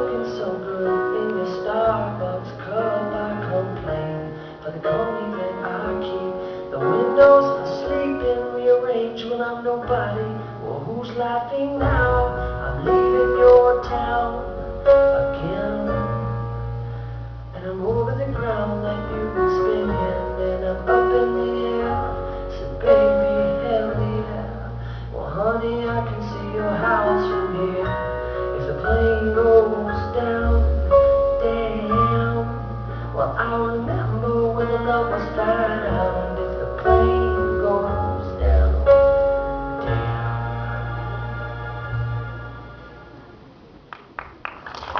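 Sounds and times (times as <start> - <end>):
person singing: 0.0 - 16.5, 17.6 - 43.4
low bass line: 9.8 - 43.6.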